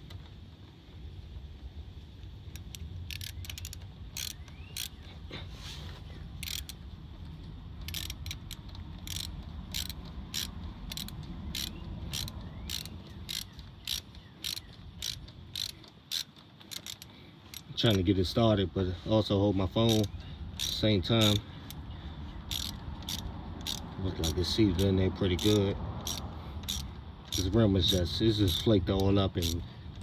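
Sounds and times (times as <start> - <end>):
low steady rumble: 0.0 - 30.0
sharp metallic tool clicks: 2.6 - 5.0, 6.4 - 6.8, 7.9 - 18.0, 19.8 - 21.8, 22.5 - 29.6.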